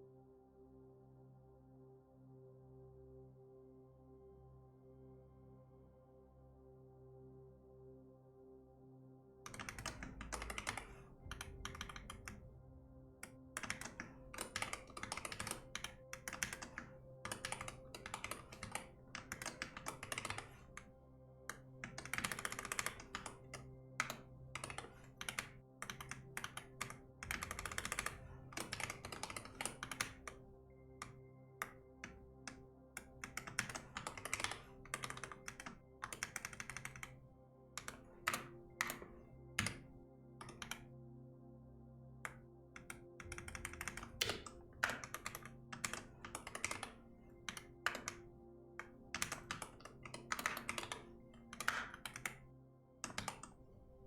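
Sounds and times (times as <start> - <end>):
soft ambient music: 0.0 - 54.0
keyboard typing: 9.5 - 12.5, 13.2 - 20.9, 21.5 - 30.4, 31.0 - 37.2, 37.8 - 40.9, 42.3 - 52.4, 53.0 - 53.8.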